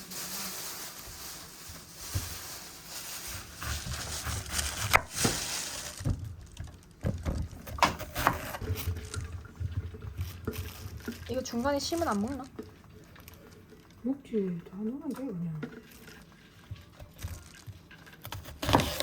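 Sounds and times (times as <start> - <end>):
rustling hiss: 0.0 - 6.1.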